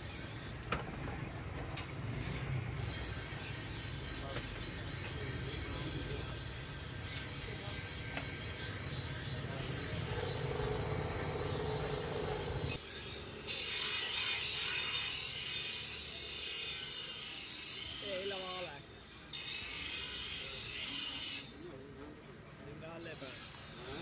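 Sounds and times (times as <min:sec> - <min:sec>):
high hiss of metal worked: 0:01.7 - 0:21.7, 0:23.0 - 0:24.0
low machine hum: 0:09.5 - 0:12.8.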